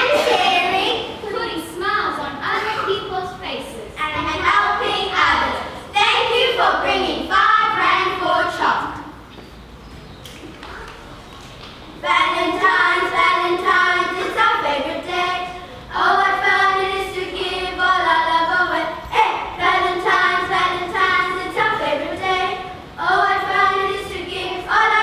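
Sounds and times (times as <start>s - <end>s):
children singing together: 0.0s - 1.4s, 4.1s - 9.2s, 12.0s - 25.0s.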